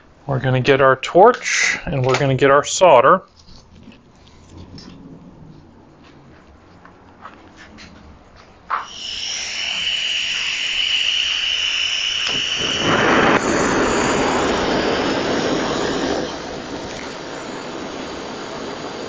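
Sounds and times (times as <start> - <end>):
gas torch flame hissing and roaring: 8.7 - 19.0.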